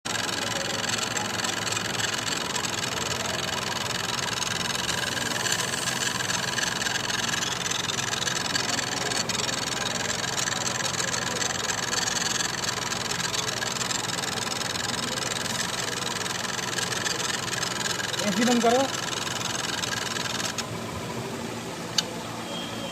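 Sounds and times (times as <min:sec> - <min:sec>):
car engine idling: 0:00.0 - 0:22.2
belt tensioner rubbing: 0:00.1 - 0:20.6
faint click: 0:21.9 - 0:22.1.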